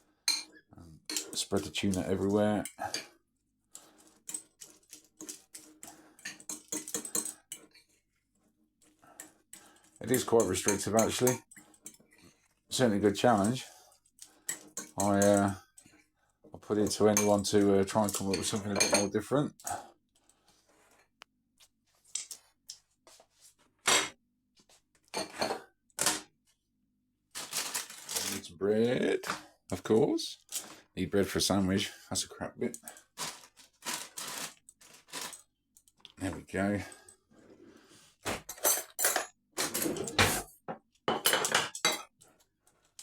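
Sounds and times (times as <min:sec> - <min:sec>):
cutlery and bowl clinking: 0:00.3 - 0:02.0, 0:04.2 - 0:08.0, 0:10.0 - 0:12.0, 0:14.5 - 0:15.9, 0:17.1 - 0:19.1, 0:38.3 - 0:40.5, 0:41.1 - 0:42.1
metal fork scraping a bowl: 0:04.2 - 0:08.0.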